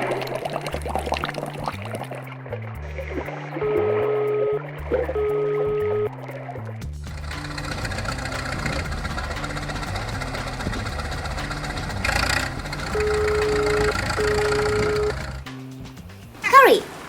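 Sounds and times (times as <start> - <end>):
long steady tones: 3.6 - 6.1, 11.5 - 15.4
cartoon vehicle engine running: 7.0 - 15.5.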